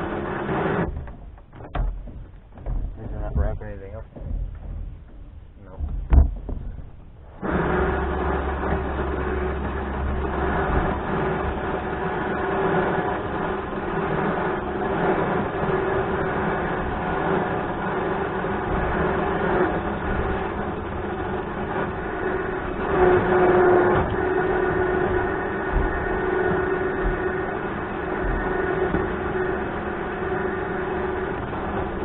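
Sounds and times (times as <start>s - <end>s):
electric winch motor whining: 7.2s - 32.0s.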